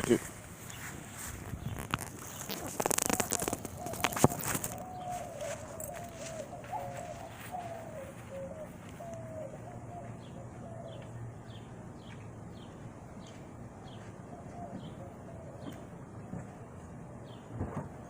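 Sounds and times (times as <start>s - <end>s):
small bird chirping: 0.6s - 14.0s
low wavering cooing call: 2.4s - 11.6s, 14.2s - 16.0s.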